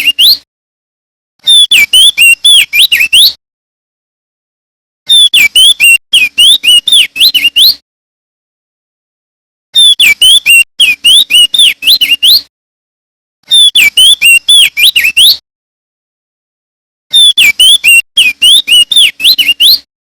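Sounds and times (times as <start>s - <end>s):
bird singing whistled song: 0.0s - 0.4s, 1.4s - 3.4s, 5.1s - 7.8s, 9.8s - 12.5s, 13.5s - 15.4s, 17.1s - 19.9s.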